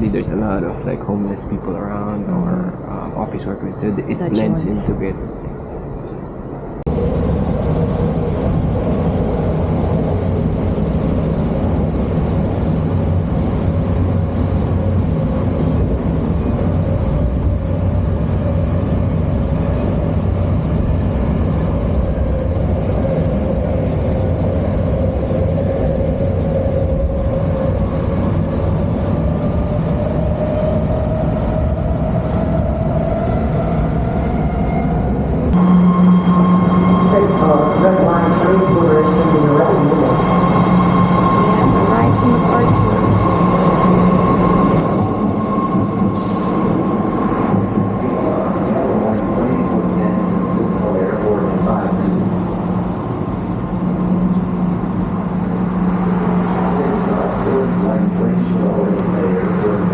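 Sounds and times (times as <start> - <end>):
train rumbling with rising whine: 0.0 - 59.9.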